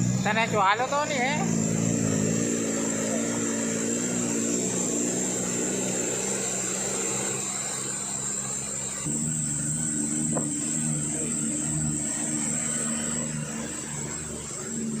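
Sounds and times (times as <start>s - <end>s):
truck diesel engine labouring: 0.0s - 15.0s.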